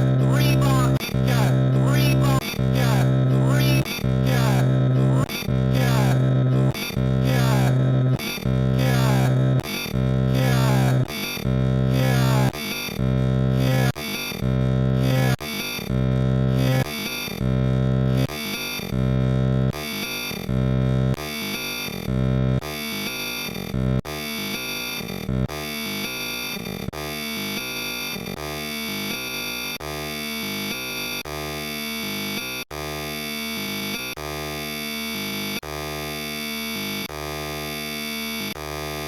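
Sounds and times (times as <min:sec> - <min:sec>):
looping buzzy synthetic tones: 0:00.0 - 0:29.2.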